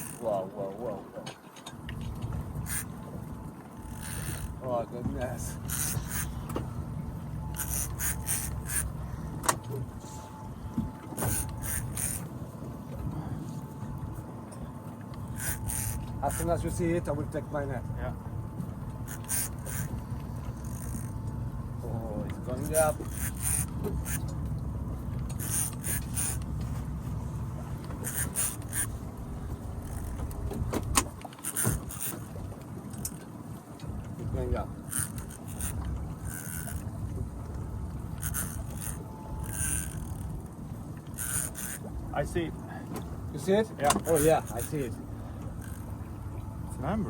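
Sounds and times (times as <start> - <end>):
fishing reel ticking: 0.0 - 0.3, 2.6 - 3.0, 3.8 - 4.6, 5.4 - 6.6, 7.5 - 9.0, 11.2 - 12.2, 15.2 - 16.8, 19.0 - 21.3, 22.4 - 24.4, 25.2 - 26.6, 27.9 - 29.0, 29.7 - 30.4, 31.4 - 32.3, 34.8 - 36.9, 38.0 - 40.4, 41.0 - 41.9, 43.9 - 46.0
boat rumble: 0.0 - 47.0.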